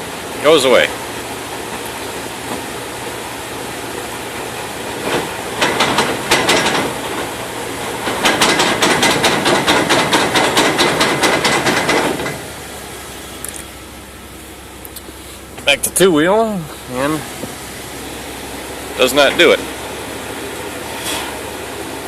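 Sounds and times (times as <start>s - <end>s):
truck engine running: 0.0s - 22.0s
drivetrain banging knocks: 4.9s - 12.6s.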